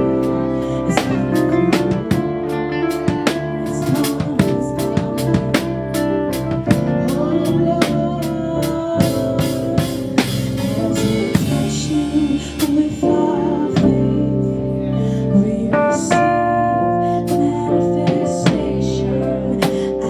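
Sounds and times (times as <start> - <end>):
drum kit beat: 0.0 - 14.2, 19.6 - 20.0
gospel band playing: 0.0 - 20.0
keyboard chords: 0.0 - 20.0
person singing: 0.0 - 20.0.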